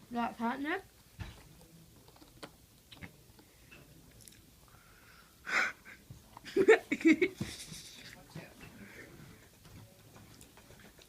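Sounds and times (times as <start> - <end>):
cat chewing with soft crunches: 9.2 - 11.0.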